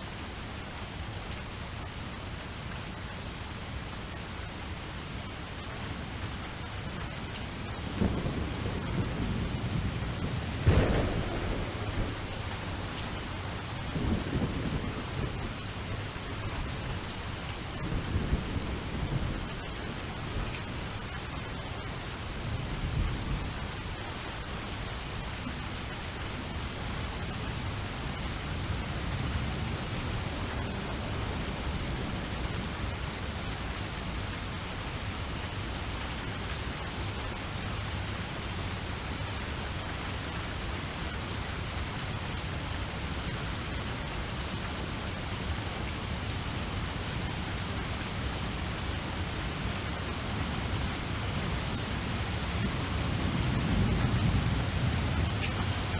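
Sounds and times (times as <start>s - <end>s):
steady rain hiss: 0.0s - 55.9s
distant thunder rumbles: 7.9s - 16.8s.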